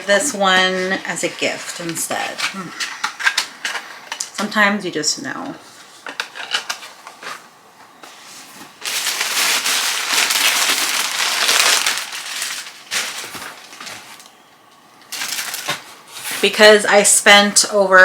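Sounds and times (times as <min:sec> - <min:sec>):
packaging crinkling: 0:06.0 - 0:07.4, 0:08.4 - 0:14.4, 0:15.1 - 0:16.5.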